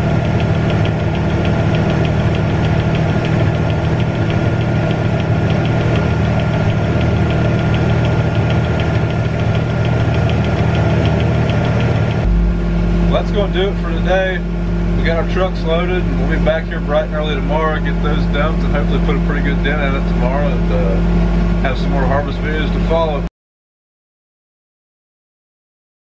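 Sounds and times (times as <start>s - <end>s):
regular light ticking: 0.0s - 12.6s
farm machinery engine running: 0.0s - 23.3s
thin steady whine: 0.0s - 23.3s.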